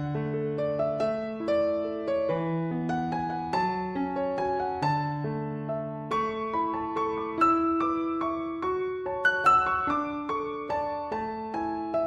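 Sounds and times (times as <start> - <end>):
soft piano music: 0.0 - 12.0.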